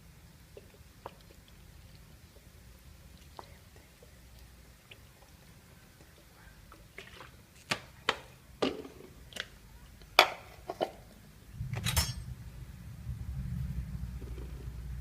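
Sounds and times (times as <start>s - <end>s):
low steady rumble: 11.1s - 15.0s
kitchenware clinking and knocking: 11.8s - 12.3s.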